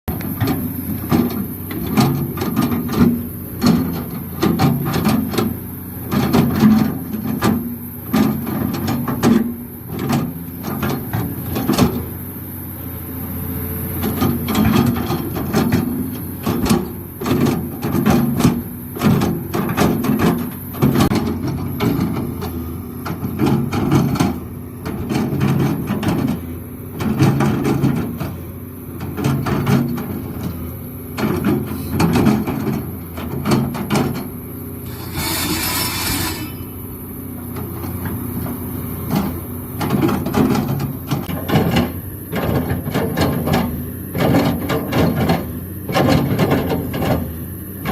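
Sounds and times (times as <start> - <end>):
excavator diesel engine working: 0.1 - 47.9
knocks and clanks: 31.2 - 36.6.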